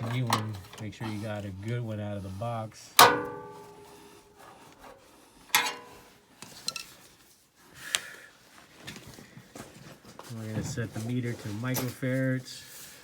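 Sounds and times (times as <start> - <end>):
tools being handled: 0.0 - 1.3, 3.0 - 7.2
sharp metallic clink: 3.0 - 4.0.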